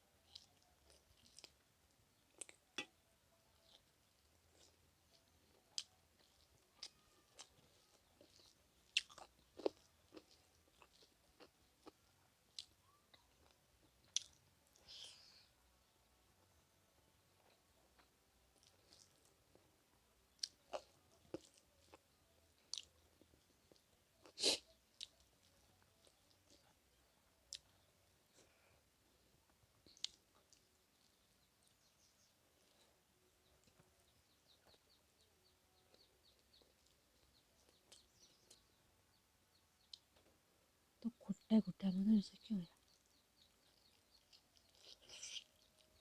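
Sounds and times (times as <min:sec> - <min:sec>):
faint bird chirps: 0:04.5 - 0:11.9, 0:12.6 - 0:16.0, 0:20.3 - 0:40.4.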